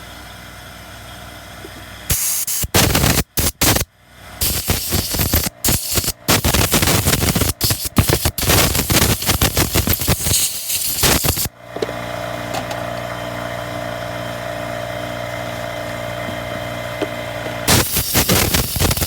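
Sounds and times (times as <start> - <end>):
hissing air jet bursts: 2.1 - 3.8, 4.4 - 11.5, 17.7 - 19.0.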